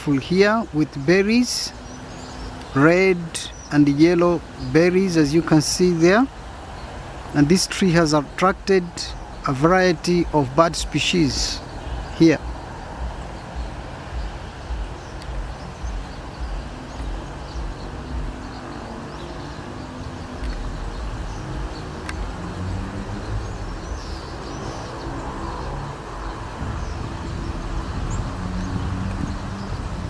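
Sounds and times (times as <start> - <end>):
small birds chirping: 0.0 - 30.0
steady low rumble: 7.3 - 24.3.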